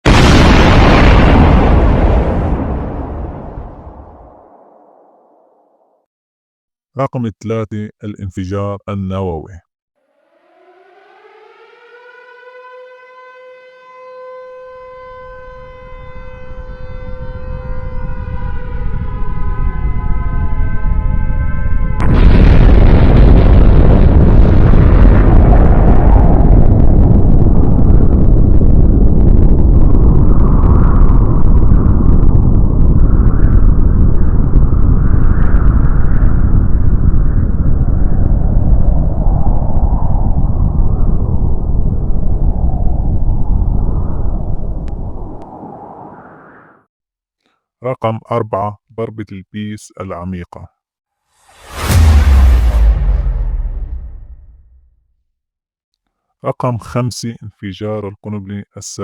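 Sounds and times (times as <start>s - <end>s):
air-raid siren wailing: 10.0s - 22.1s
deep rumble: 18.1s - 46.9s, 51.4s - 55.1s.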